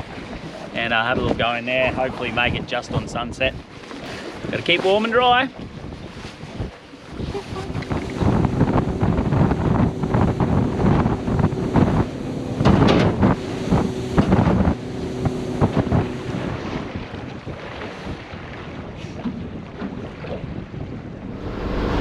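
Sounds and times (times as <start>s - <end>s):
hull slapping on waves: 0.0s - 21.3s
wind rushing on microphone: 0.0s - 22.0s
boat engine drone: 6.9s - 18.8s, 20.9s - 22.0s.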